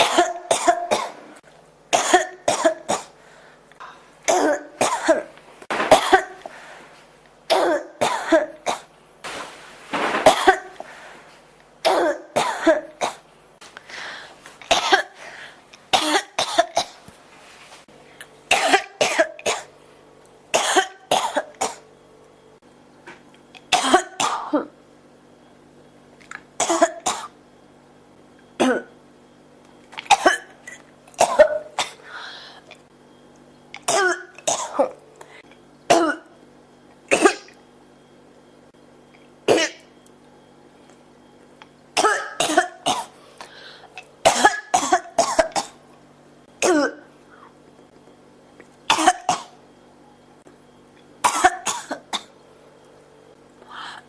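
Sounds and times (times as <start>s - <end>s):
person coughing: 0.0s - 1.3s, 2.0s - 3.2s, 4.3s - 6.5s, 7.5s - 8.9s, 10.1s - 10.8s, 11.8s - 13.2s, 14.7s - 15.2s, 15.9s - 17.0s, 18.5s - 19.7s, 20.6s - 21.8s, 23.7s - 24.7s, 28.6s - 28.9s, 30.1s - 32.0s, 33.9s - 35.0s, 35.9s - 36.3s, 37.1s - 37.6s, 39.5s - 39.9s, 42.0s - 43.2s, 44.3s - 45.8s, 46.6s - 47.1s, 48.9s - 49.6s, 51.3s - 52.3s.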